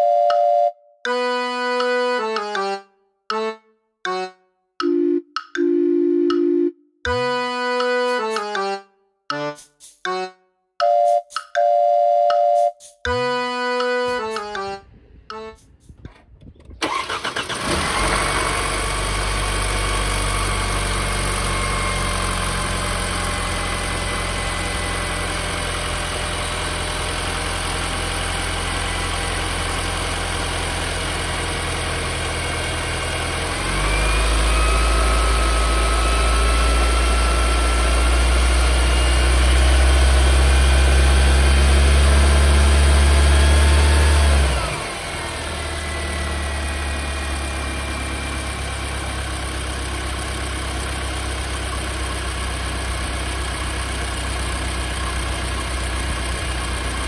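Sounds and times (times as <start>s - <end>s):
car engine idling and revving: 16.7s - 57.0s.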